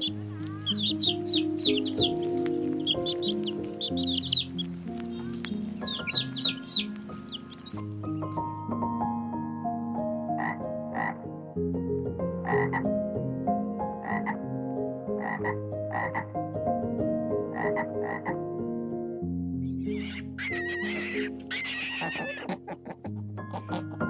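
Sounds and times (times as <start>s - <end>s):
short animal calls: 0.0s - 2.2s, 19.8s - 24.0s
high wavering animal call: 0.0s - 7.8s, 19.8s - 22.7s
calm background music: 0.0s - 24.0s.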